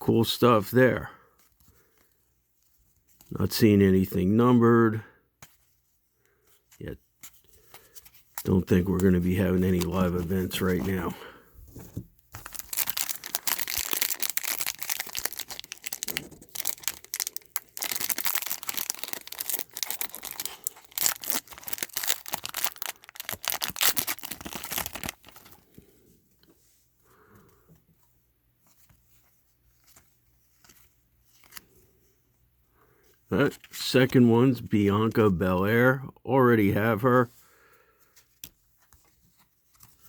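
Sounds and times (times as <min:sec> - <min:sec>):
cards being handled: 0:05.4 - 0:25.9, 0:28.6 - 0:32.2, 0:38.1 - 0:40.0
wrapper tearing and crinkling: 0:12.4 - 0:25.6.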